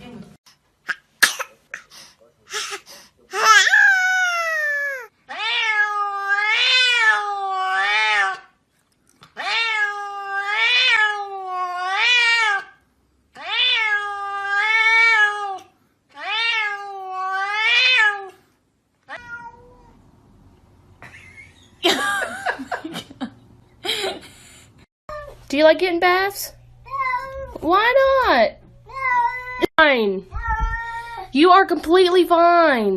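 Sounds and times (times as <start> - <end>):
cat meowing: 3.4 - 8.5, 9.4 - 12.7, 13.4 - 18.4, 19.1 - 20.0, 26.8 - 27.6, 30.3 - 31.3.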